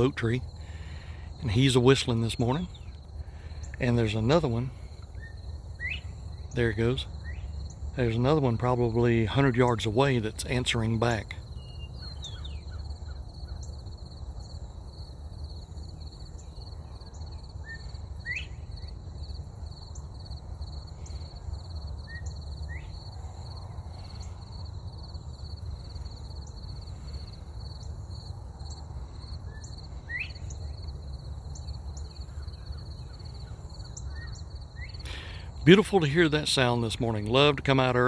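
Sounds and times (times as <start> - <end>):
high insect drone: 0.0 - 38.0
quail whistling call: 17.6 - 18.7, 29.5 - 30.6.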